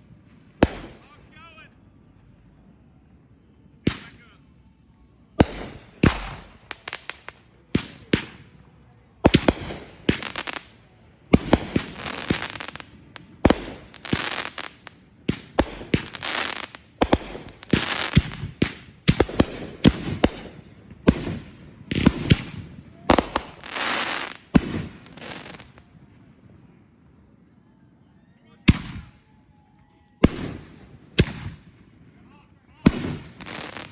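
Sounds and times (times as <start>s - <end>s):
fireworks bangs: 0.0s - 1.7s, 5.3s - 26.5s, 30.2s - 32.2s, 32.8s - 33.9s
fireworks crackling: 0.0s - 2.2s, 3.8s - 27.0s, 30.2s - 33.9s.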